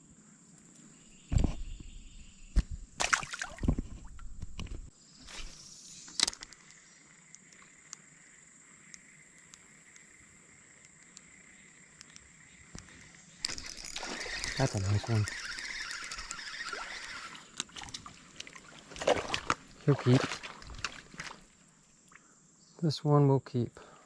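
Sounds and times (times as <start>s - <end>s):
splashy rustles: 3.0s - 4.1s, 13.5s - 21.6s
high insect drone: 4.9s - 23.5s.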